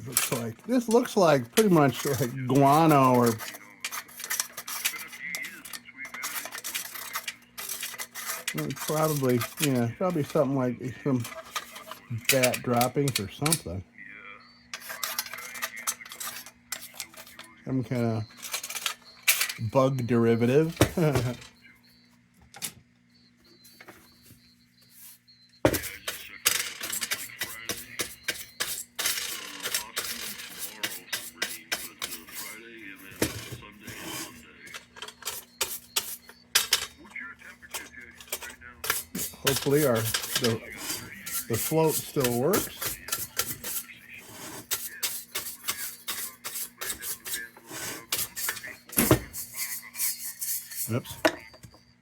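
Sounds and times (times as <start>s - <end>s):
taps and scrapes on metal heater: 0.0s - 13.8s, 25.7s - 36.9s, 37.7s - 51.8s.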